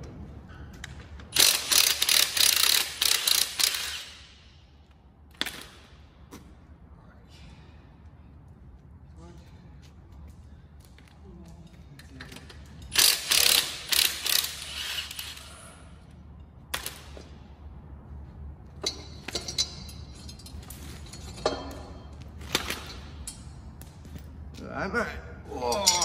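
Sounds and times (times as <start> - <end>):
hand ratchet clicking: 1.3 - 4.2, 12.8 - 15.4.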